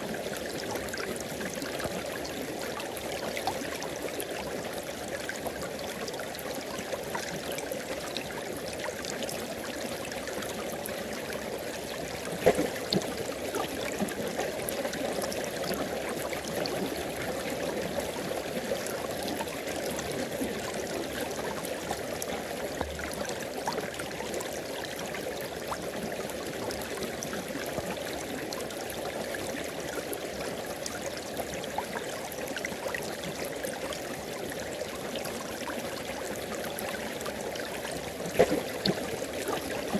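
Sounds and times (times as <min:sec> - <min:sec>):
water splash: 0:12.4 - 0:13.2, 0:38.3 - 0:39.9.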